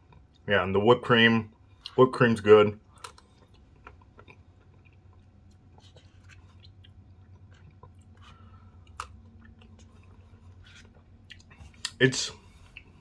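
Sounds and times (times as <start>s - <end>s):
person chewing with crunches: 2.9s - 13.0s.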